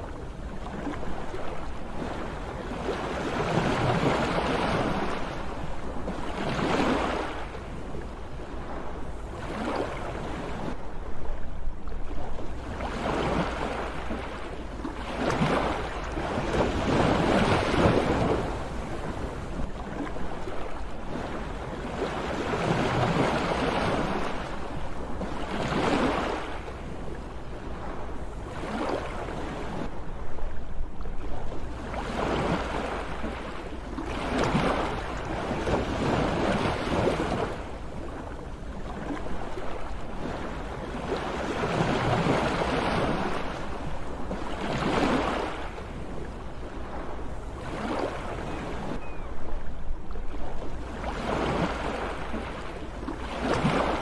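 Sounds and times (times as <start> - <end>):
sea waves washing onto shore: 12.2 - 29.9, 50.2 - 54.0.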